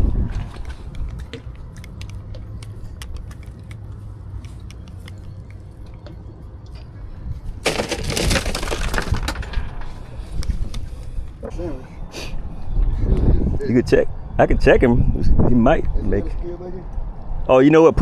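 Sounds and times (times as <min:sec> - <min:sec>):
ice clattering and crunching: 0:07.6 - 0:10.6.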